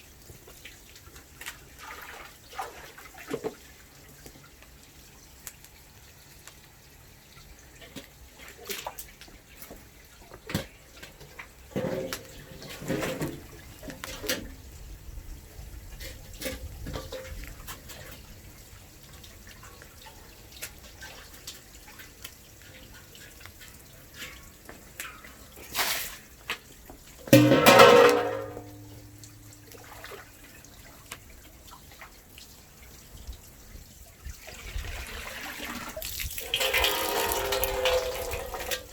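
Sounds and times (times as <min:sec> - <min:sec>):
kitchenware clattering: 0:27.3 - 0:29.0
water running into a sink: 0:34.4 - 0:38.9.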